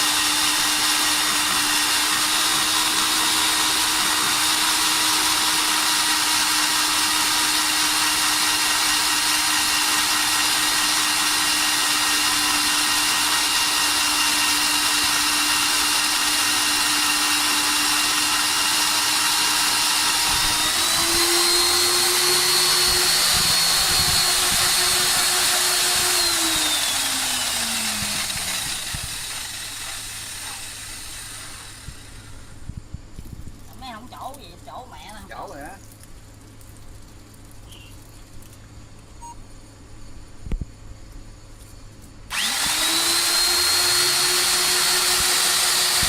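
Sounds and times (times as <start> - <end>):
core drill motor whining: 0.0 - 32.7, 42.3 - 46.0.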